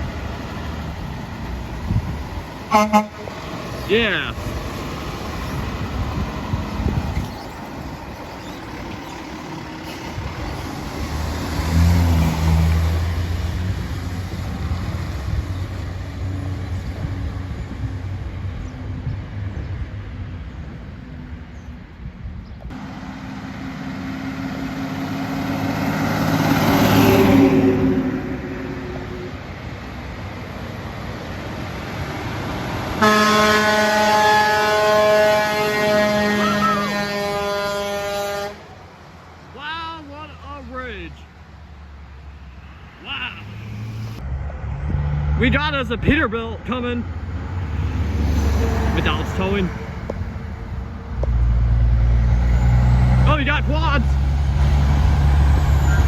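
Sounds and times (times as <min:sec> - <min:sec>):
heavy trucks driving past: 0:00.0 - 0:56.0
loud horn blast: 0:02.7 - 0:03.4, 0:26.9 - 0:29.4, 0:33.0 - 0:38.7.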